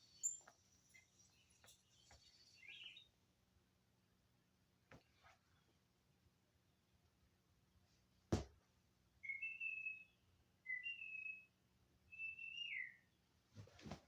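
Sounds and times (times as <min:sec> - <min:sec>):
high whistle-like chirps: 0:00.0 - 0:03.1, 0:09.3 - 0:11.5, 0:12.1 - 0:13.0.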